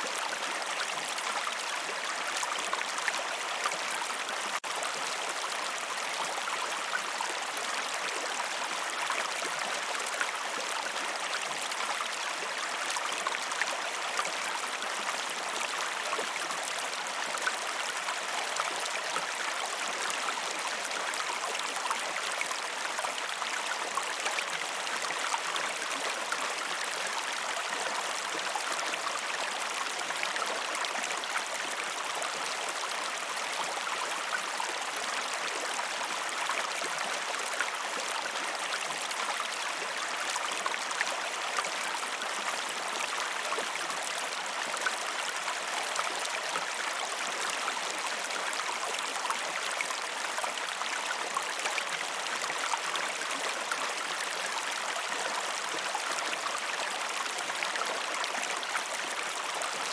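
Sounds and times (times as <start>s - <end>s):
river water flowing: 0.0s - 59.9s.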